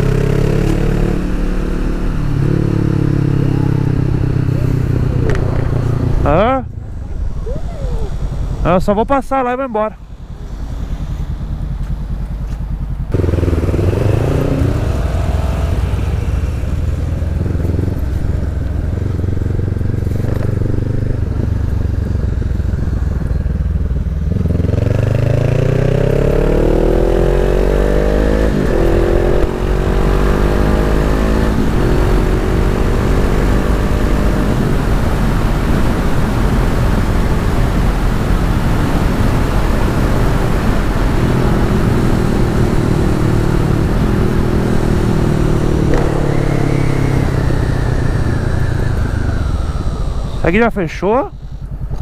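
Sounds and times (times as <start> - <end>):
motorcycle engine accelerating: 0.0 - 52.0
wind rush: 2.1 - 11.7, 28.4 - 52.0.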